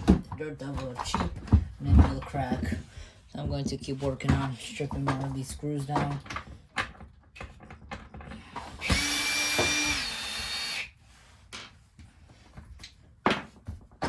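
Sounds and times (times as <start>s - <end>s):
battery drill whine: 8.6s - 10.9s.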